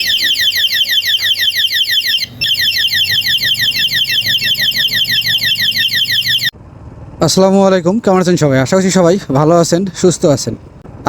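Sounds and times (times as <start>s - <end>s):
alarm siren warbling: 0.0s - 6.6s.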